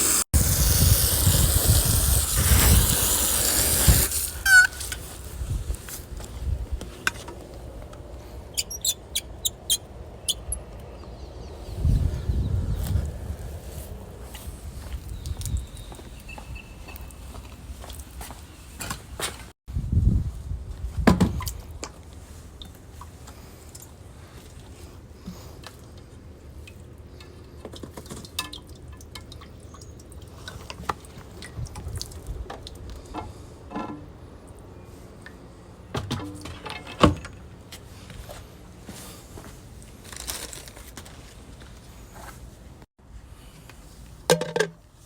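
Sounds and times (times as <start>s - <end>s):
water dripping and splashing: 26.6s - 33.0s
knocks and clatter of parts: 36.0s - 37.5s.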